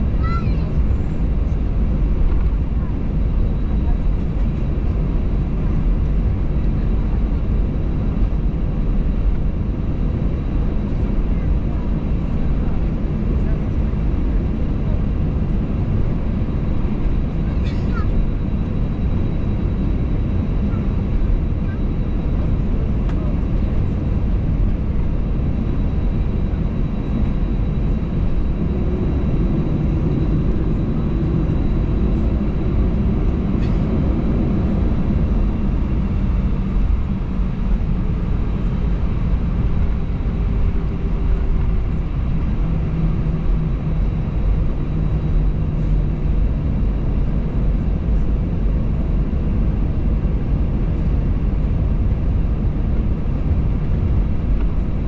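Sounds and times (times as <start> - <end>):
jet engines humming: 0.0 - 55.0
cabin rumble: 28.6 - 40.6.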